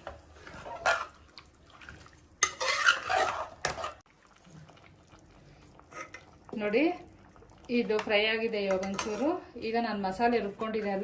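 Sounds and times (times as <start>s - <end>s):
metal spoon scraping a metal pot: 2.4s - 4.0s.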